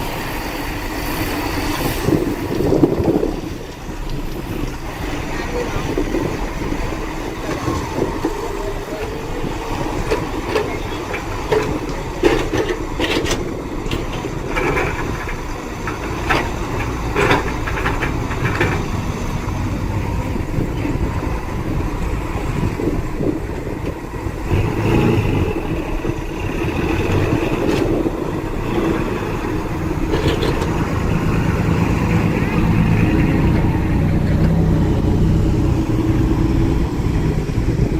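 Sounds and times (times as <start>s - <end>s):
diesel engine running: 0.0s - 37.9s
metal clanks and knocks: 7.4s - 19.4s, 25.9s - 33.6s.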